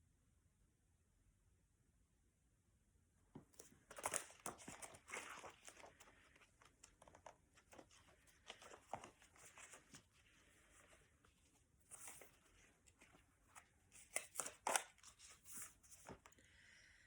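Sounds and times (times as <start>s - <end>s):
book rustling and crinkling: 3.4s - 16.4s
book pages clicking and scraping: 3.6s - 16.4s.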